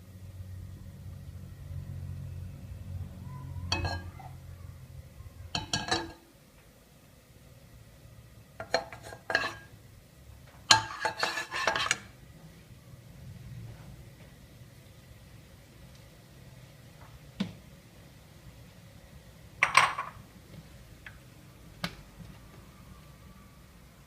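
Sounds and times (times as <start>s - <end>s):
utensils clinking against dishes: 3.7s - 4.2s, 5.6s - 6.2s, 8.6s - 9.7s, 10.7s - 12.1s.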